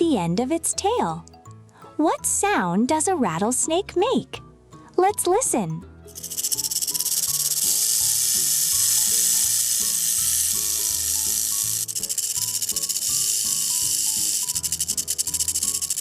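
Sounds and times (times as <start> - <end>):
rattlesnake tail rattle: 6.1 - 16.0.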